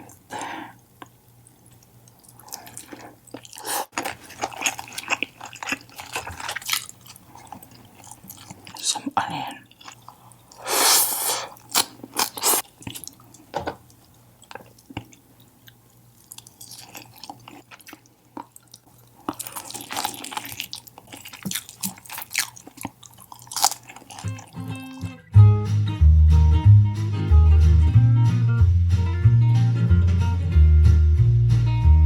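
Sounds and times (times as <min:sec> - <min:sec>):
chewing and crunching: 0:00.1 - 0:10.6, 0:11.5 - 0:25.0
crunchy bite: 0:10.6 - 0:13.1, 0:19.2 - 0:24.6.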